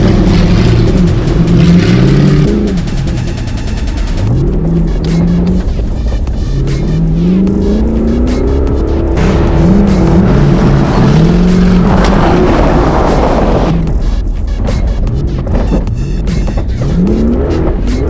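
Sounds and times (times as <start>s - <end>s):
rally car engine revving: 0.0s - 18.0s.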